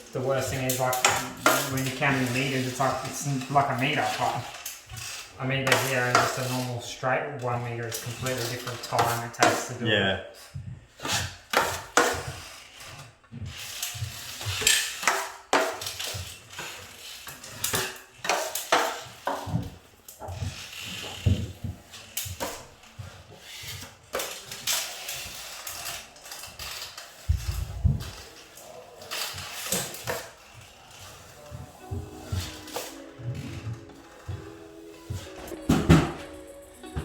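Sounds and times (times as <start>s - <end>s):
steel blades scraping mud pan: 0.0s - 9.8s.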